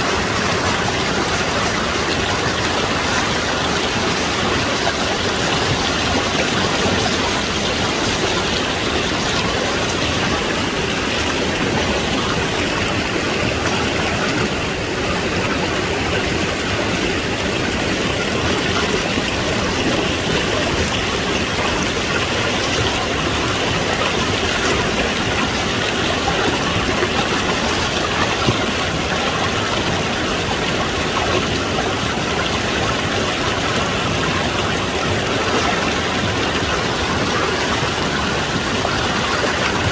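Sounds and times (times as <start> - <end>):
stream rushing: 0.0 - 39.9.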